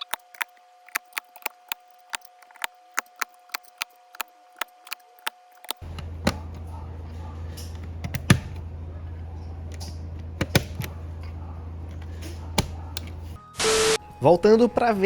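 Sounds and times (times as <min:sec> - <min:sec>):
steady low hum: 0:00.0 - 0:13.4
keyboard switches clicking into place: 0:07.6 - 0:08.6, 0:09.7 - 0:11.0.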